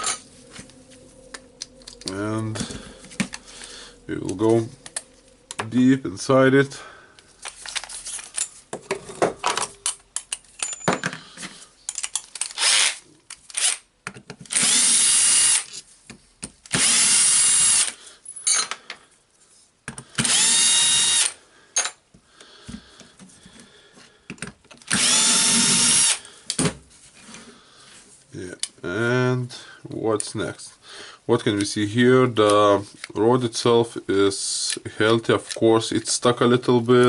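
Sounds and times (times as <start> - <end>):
clicks and knocks of parts: 7.4 - 14.6, 24.3 - 25.0
cordless drill motor whining: 12.6 - 12.9, 14.5 - 15.6, 16.7 - 18.0, 20.2 - 21.4, 24.9 - 26.2.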